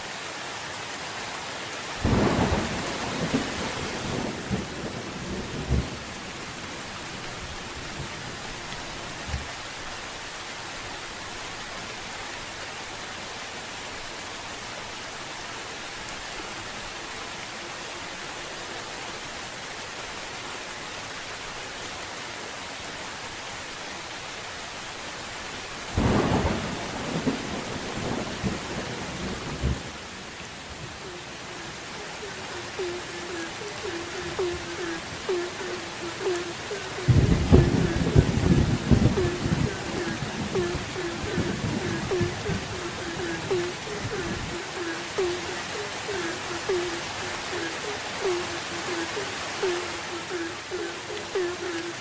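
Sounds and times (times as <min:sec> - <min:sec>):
steady rain falling: 0:00.0 - 0:52.0
thunder crackling: 0:02.0 - 0:06.3, 0:30.8 - 0:49.8.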